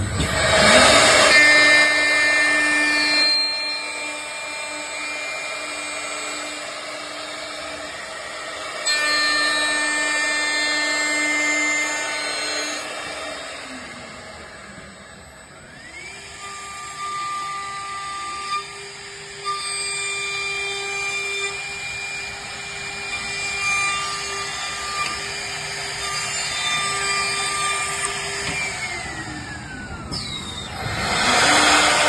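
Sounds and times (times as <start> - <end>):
higher machine tone: 0.0 - 7.0
machine motor whine: 0.0 - 32.0.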